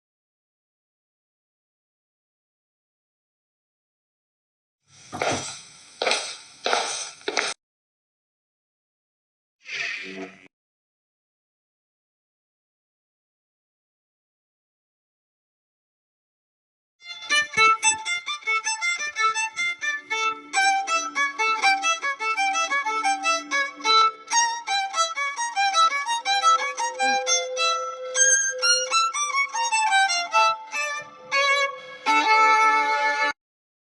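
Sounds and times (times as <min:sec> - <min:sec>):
fast violin tune: 0:17.0 - 0:33.4
held lower note: 0:26.5 - 0:32.9.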